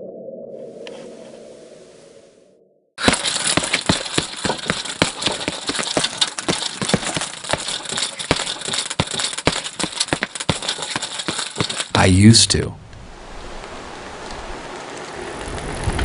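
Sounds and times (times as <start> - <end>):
dense clattering rattle: 3.0 - 12.0.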